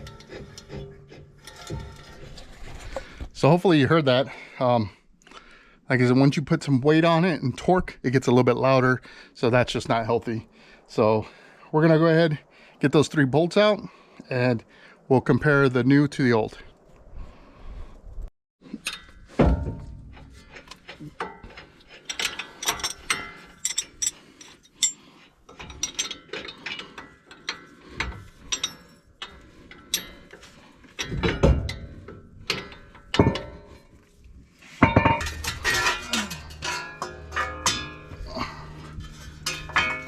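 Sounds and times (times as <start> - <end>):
tools clanking: 0.0 - 3.3, 18.7 - 40.0
metal knocks: 19.3 - 20.3, 31.0 - 33.8, 34.8 - 40.0.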